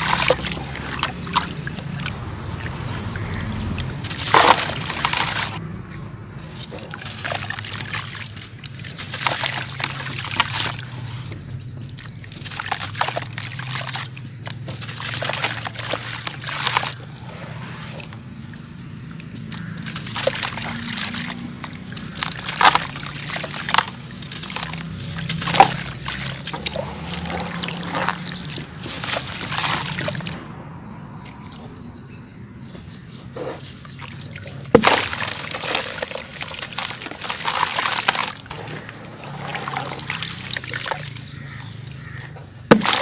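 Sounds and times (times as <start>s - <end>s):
blocks crumbling in water: 0.0s - 2.9s, 3.6s - 5.6s, 6.6s - 10.9s, 11.8s - 17.2s, 19.3s - 30.4s, 33.6s - 43.0s
sharp plops in water: 0.0s - 5.6s, 17.7s - 30.4s, 33.6s - 43.0s
water sloshing and trickling: 0.0s - 43.0s.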